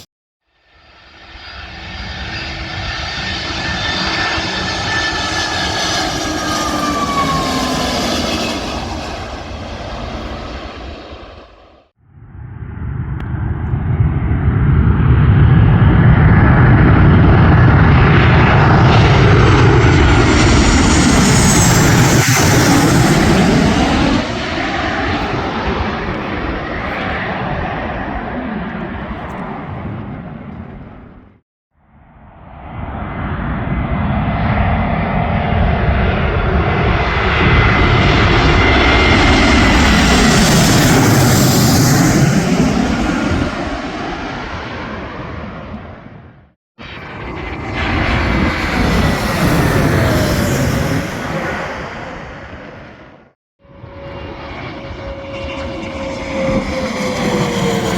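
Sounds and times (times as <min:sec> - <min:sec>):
airplane engine rush: 0:00.0 - 0:31.4, 0:32.0 - 0:57.9
high engine whine: 0:00.8 - 0:31.4, 0:53.6 - 0:57.9.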